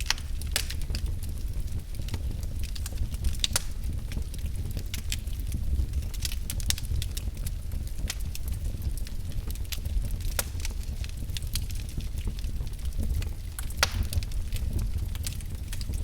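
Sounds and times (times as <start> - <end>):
wood fire crackling: 0.0 - 16.0
sharp pops and snaps: 3.3 - 3.8, 13.6 - 14.6.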